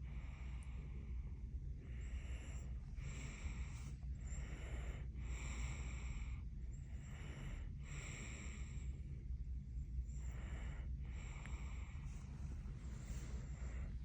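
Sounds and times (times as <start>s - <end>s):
constant low hum: 0.0s - 14.0s.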